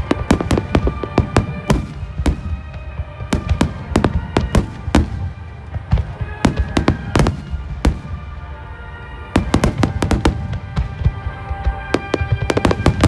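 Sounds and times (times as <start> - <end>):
fireworks bursting with bangs: 0.0 - 13.0
music playing: 0.0 - 13.0.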